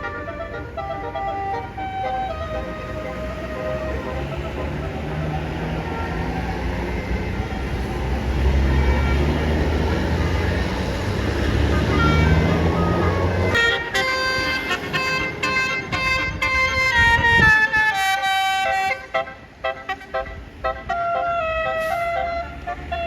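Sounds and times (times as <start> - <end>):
melodic air horn: 0.0 - 6.7, 11.4 - 23.0
bus engine rumbling: 0.0 - 23.0.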